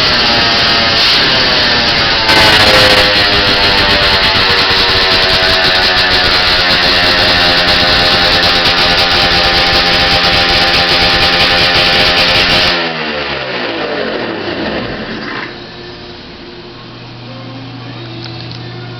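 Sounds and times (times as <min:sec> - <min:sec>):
snowmobile engine running: 0:00.0 - 0:12.8.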